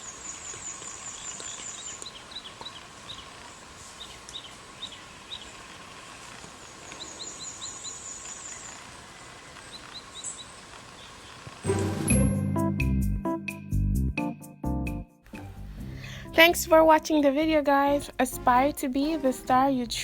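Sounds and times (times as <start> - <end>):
small birds chirping: 0.0 - 11.6.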